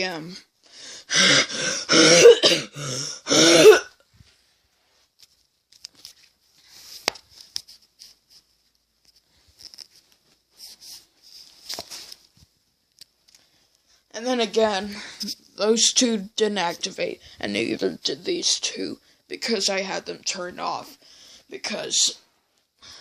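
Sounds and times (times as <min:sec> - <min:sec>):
person coughing hard: 0:01.1 - 0:04.0.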